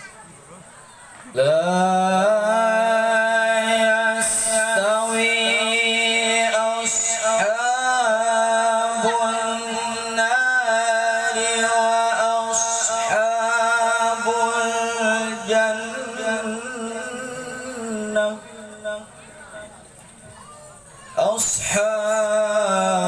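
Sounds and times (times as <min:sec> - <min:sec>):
boy chanting melodic recitation: 0:01.2 - 0:23.0.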